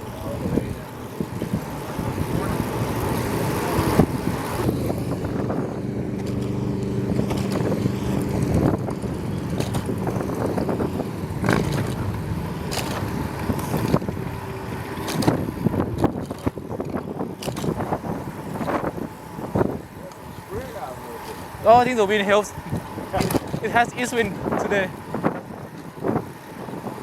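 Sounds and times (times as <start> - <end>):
bicycle clicks and rattles: 0.0 - 27.0
road and air rumble: 0.0 - 27.0.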